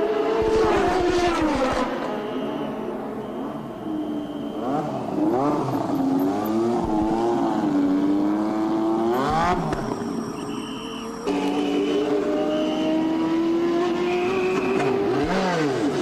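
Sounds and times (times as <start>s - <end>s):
racing car engine revving: 0.0s - 2.1s, 4.6s - 9.8s, 11.3s - 16.0s.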